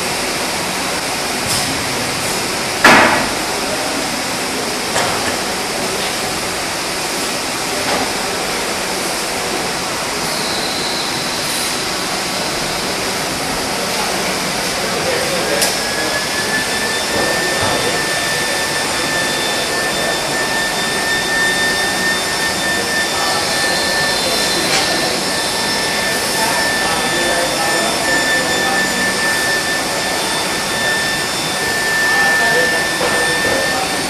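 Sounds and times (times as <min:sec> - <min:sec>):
machinery hum: 0:00.0 - 0:34.0
high-pitched coil whine: 0:07.4 - 0:34.0.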